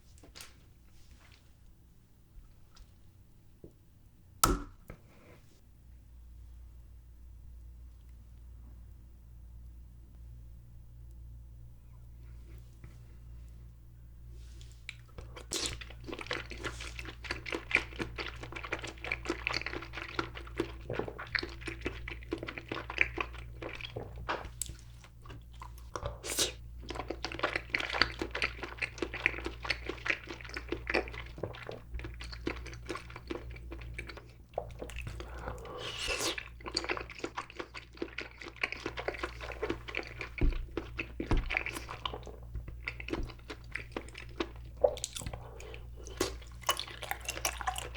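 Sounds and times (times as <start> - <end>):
chewing with mouth smacks: 14.6 - 47.9.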